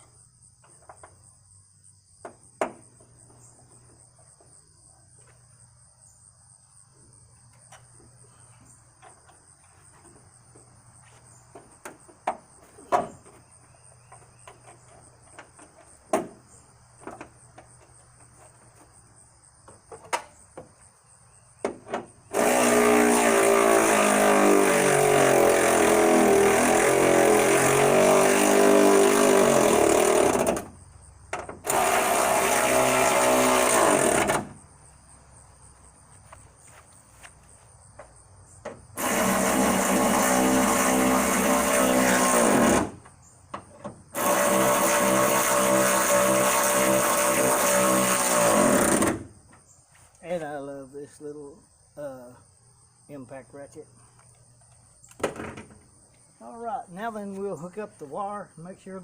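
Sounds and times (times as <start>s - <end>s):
crickets chirping: 0.0s - 23.0s, 29.0s - 59.0s
power tool motor running: 22.3s - 30.7s, 31.6s - 34.5s, 39.0s - 43.0s, 44.1s - 49.3s.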